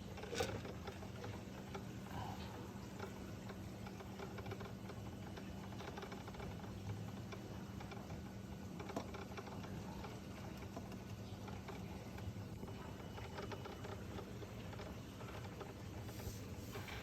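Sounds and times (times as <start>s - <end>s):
light clicks and ticks: 0.0s - 17.0s
magnetic stirrer humming: 0.0s - 17.0s.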